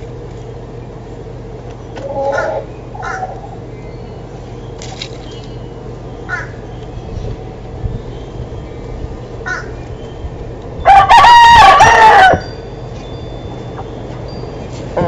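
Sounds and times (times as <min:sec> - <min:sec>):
rooster crowing: 0:10.8 - 0:12.5.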